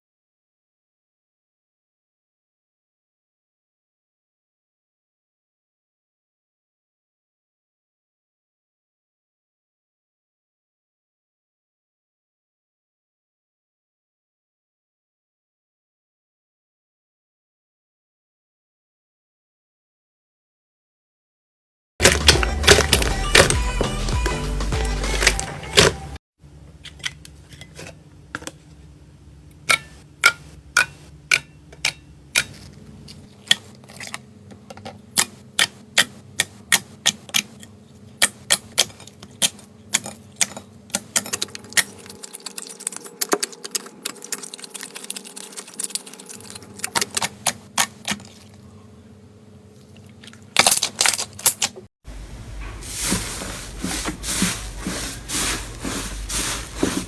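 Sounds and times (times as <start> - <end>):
slime crackling and rubbing: 52.8 - 57.0.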